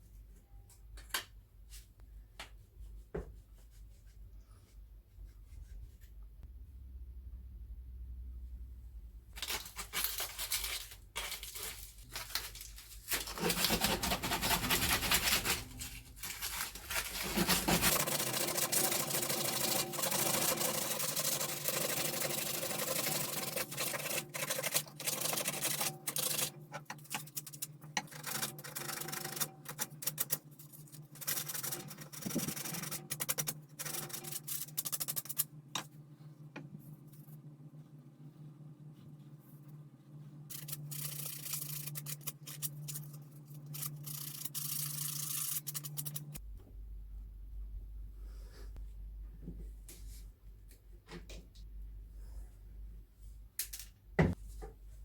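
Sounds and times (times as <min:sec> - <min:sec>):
low steady hum: 0:00.0 - 0:55.0
sandpaper rubbing on wood: 0:13.4 - 0:16.1.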